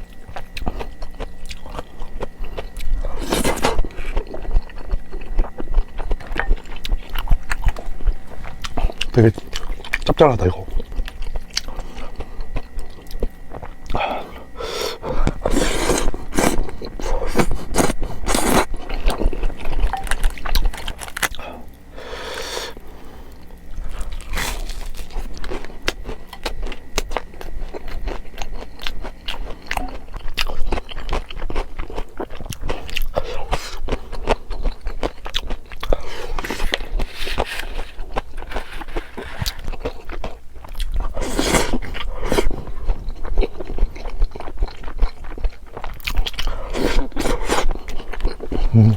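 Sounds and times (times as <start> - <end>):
crisp crunching and chewing: 0.0 - 48.9.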